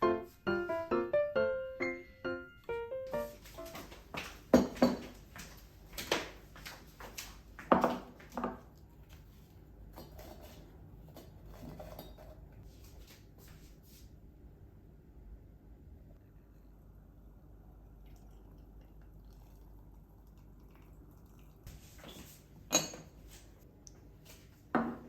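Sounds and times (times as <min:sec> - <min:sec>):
dishes and utensils clattering: 0:04.5 - 0:05.2, 0:22.1 - 0:23.2.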